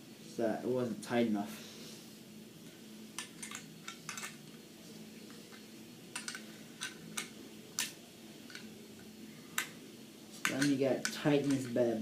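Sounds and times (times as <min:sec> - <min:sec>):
metal parts clicking and tapping: 0:03.2 - 0:04.6, 0:05.3 - 0:08.7, 0:10.4 - 0:11.9.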